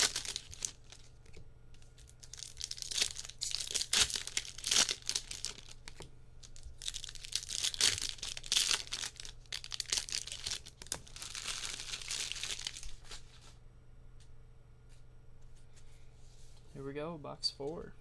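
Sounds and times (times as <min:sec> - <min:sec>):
card pack wrappers tearing and crinkling: 0:00.0 - 0:13.5.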